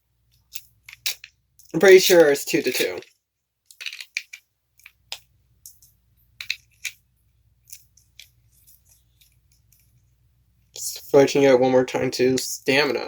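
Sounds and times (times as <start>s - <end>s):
plastic parts clicking: 2.7s - 7.0s.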